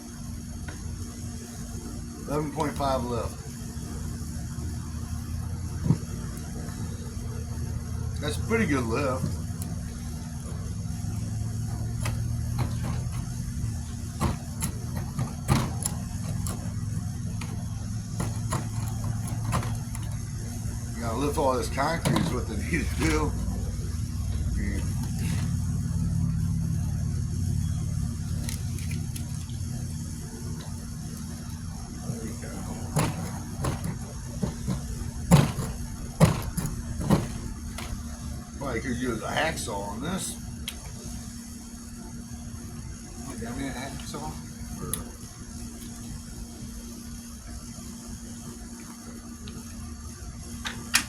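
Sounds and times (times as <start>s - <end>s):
steady low hum: 0.0s - 51.0s
tools clicking and knocking: 12.0s - 20.3s, 22.0s - 23.2s, 32.6s - 38.0s.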